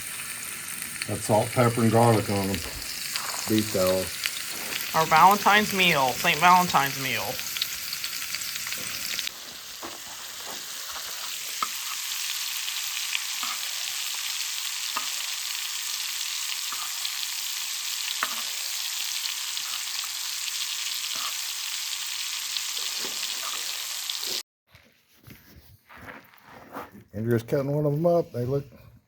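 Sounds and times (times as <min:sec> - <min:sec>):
steaks sizzling in fat: 0:00.0 - 0:24.4
fat popping and crackling: 0:01.2 - 0:11.9.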